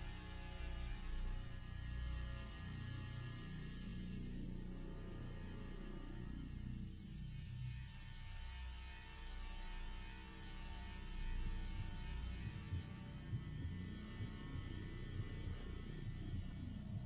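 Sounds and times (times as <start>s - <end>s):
low droning hum: 0.0s - 17.0s.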